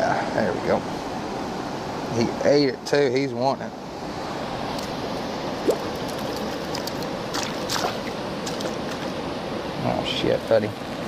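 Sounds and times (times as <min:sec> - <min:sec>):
creek water flowing: 0:03.7 - 0:11.0.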